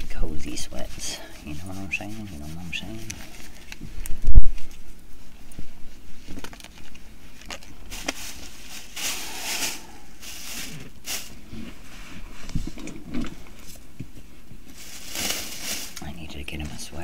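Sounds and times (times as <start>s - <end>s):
packaging rustling: 6.2s - 11.4s, 14.6s - 16.2s.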